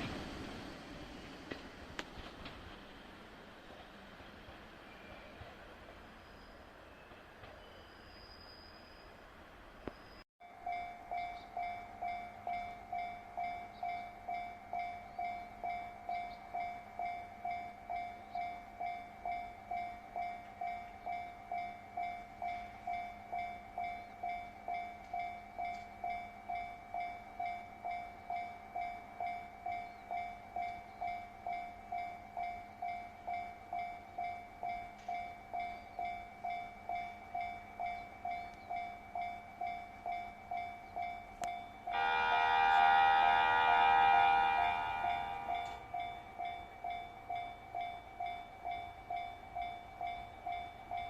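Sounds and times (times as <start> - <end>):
level crossing bell ringing: 30.2 - 51.0
loud sustained horn: 41.9 - 45.9.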